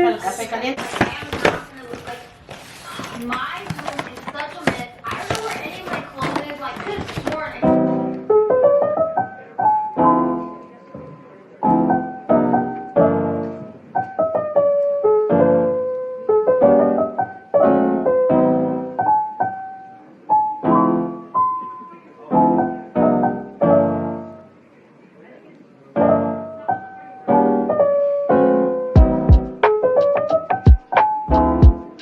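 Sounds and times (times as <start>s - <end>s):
piano music: 5.2s - 24.6s, 25.9s - 32.0s.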